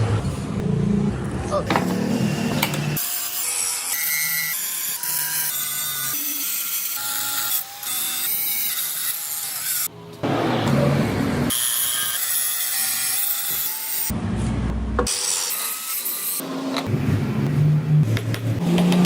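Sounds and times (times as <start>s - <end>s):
power tool grinding metal: 1.7s - 10.9s, 11.5s - 14.1s, 15.1s - 16.9s.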